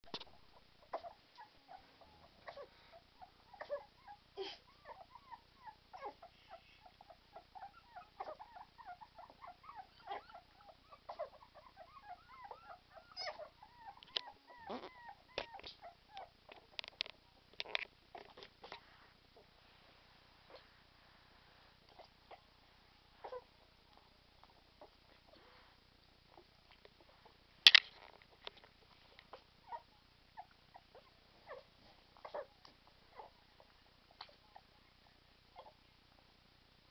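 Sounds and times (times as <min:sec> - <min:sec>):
puppies whimpering: 0:00.9 - 0:16.3, 0:29.3 - 0:32.5.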